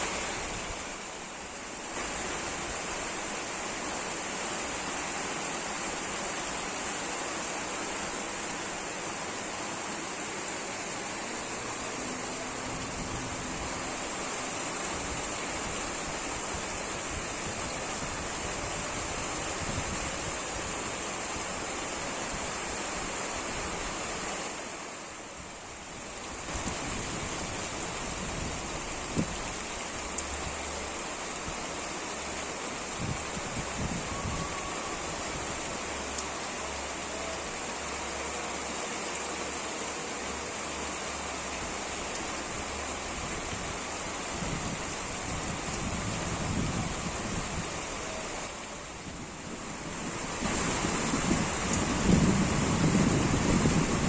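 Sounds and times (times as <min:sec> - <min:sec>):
wind-blown rain hiss: 0:00.0 - 0:54.0.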